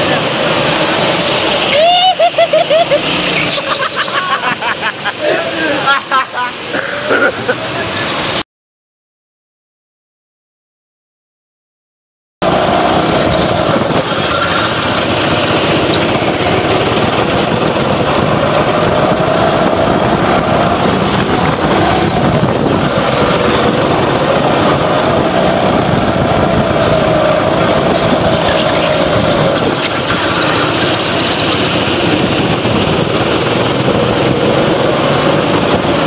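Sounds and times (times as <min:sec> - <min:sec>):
go-kart engine revving: 0:00.0 - 0:08.4, 0:12.4 - 0:36.0.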